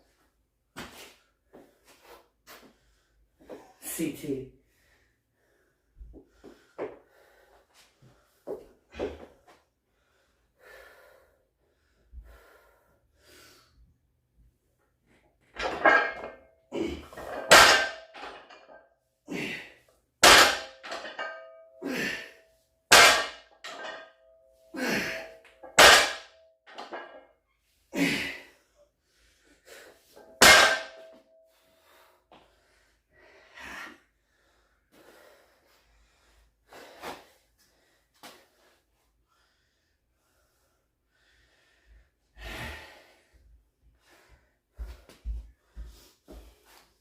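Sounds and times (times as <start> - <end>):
barbell plates clanging on floor: 15.6 - 18.8, 20.2 - 21.7, 22.9 - 24.2, 24.9 - 27.2, 30.2 - 31.2.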